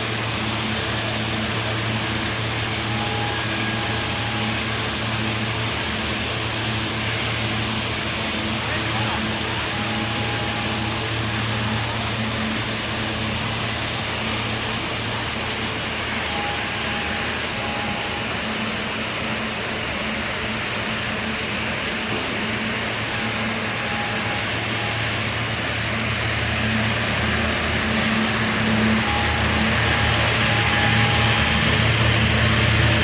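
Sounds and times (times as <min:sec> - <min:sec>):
industrial machinery roar: 0:00.0 - 0:33.0.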